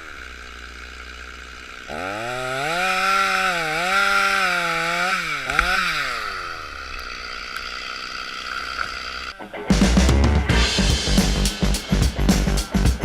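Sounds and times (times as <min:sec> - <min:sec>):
chainsaw cutting into tree: 0:00.0 - 0:09.4
wood cracking: 0:00.0 - 0:09.4.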